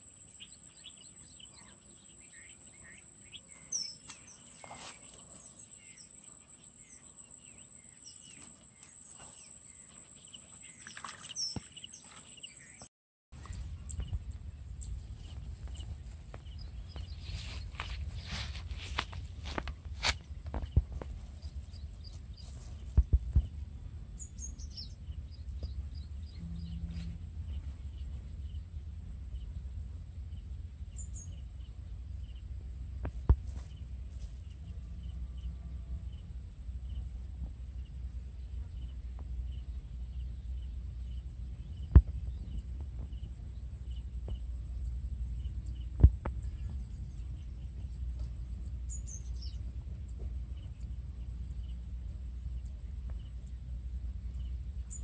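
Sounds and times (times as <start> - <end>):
high insect trill: 0.0 - 12.8
falling bird chirps: 0.0 - 14.2
steady low rumble: 13.4 - 55.0.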